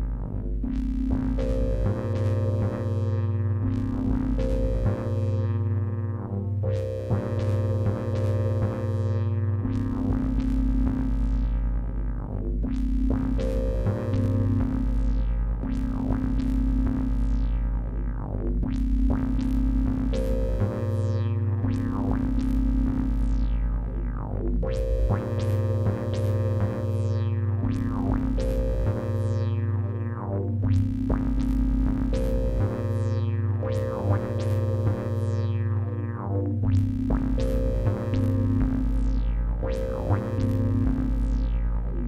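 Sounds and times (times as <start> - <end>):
held synth bass notes: 0.0 - 42.0
synthesizer funk arpeggio: 0.0 - 42.0
bright synth filter sweeps: 18.8 - 42.0.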